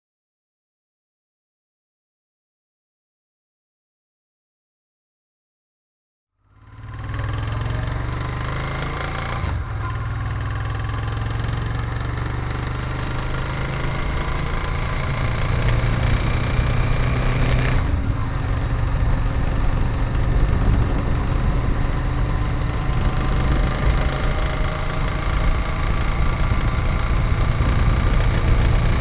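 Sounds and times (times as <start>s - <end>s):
motorcycle engine revving: 6.5s - 29.0s
engine knocking: 22.6s - 29.0s.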